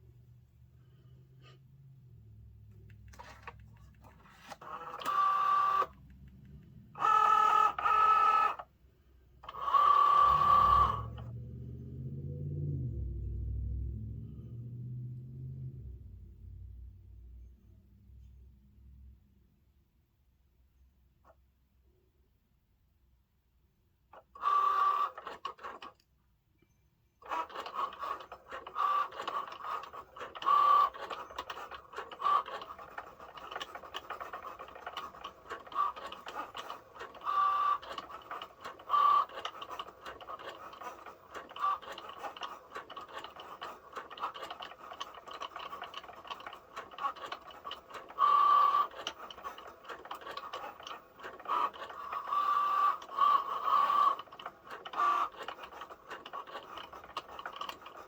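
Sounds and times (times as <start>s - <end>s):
cutting machine motors whining: 2.8s - 8.7s, 9.4s - 16.0s, 27.2s - 58.0s.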